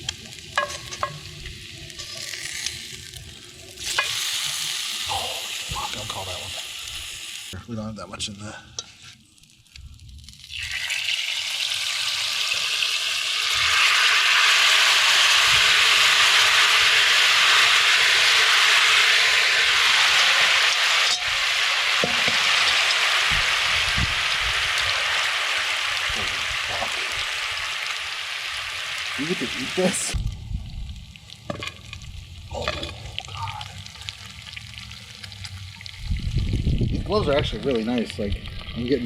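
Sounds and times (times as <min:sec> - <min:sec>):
meat sizzling in a pan: 0:00.0 - 0:07.6, 0:09.4 - 0:30.2.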